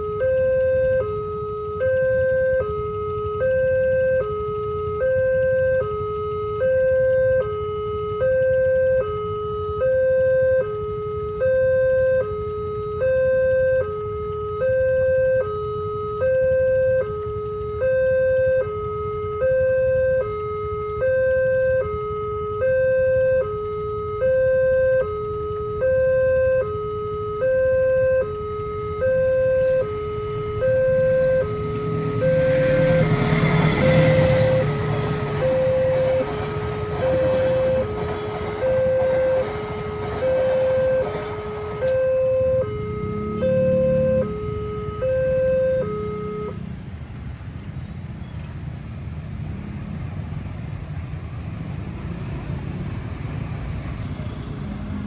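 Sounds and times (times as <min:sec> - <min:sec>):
level crossing two-tone alarm: 0:00.0 - 0:46.6
train rumble: 0:29.6 - 0:45.4, 0:46.5 - 0:55.0.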